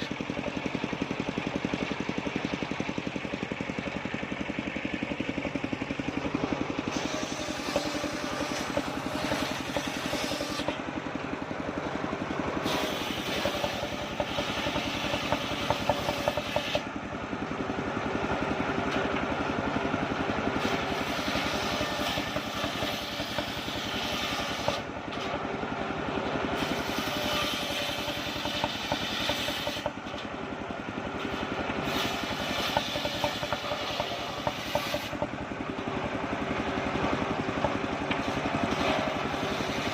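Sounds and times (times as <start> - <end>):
sawmill engine running: 0.0 - 39.9
saw blade hissing through wood: 6.9 - 10.7, 12.6 - 16.8, 20.6 - 24.8, 31.8 - 35.2, 38.7 - 39.9.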